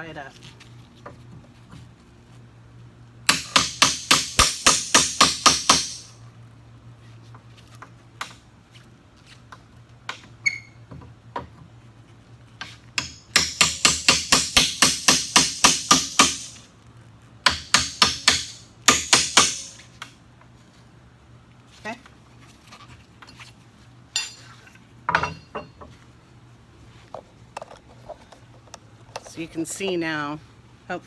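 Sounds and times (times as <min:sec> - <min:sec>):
hammer striking crowbar: 0:03.3 - 0:06.1, 0:13.0 - 0:16.6, 0:17.5 - 0:19.9.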